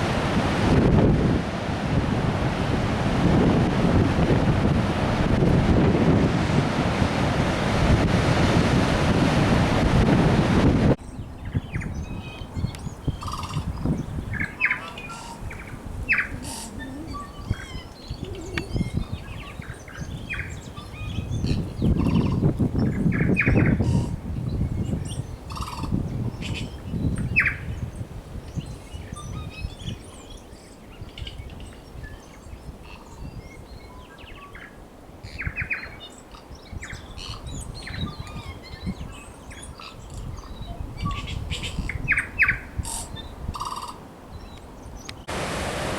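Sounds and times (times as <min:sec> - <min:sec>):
surf: 0:00.0 - 0:11.0, 0:45.2 - 0:45.9
wind rumble: 0:00.0 - 0:14.6, 0:40.0 - 0:45.9
small birds chirping: 0:11.0 - 0:24.0.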